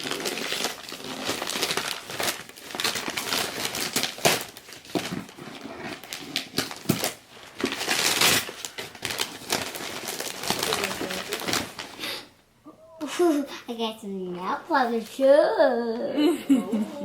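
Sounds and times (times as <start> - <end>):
wrapping paper crinkling: 0.0 - 12.1.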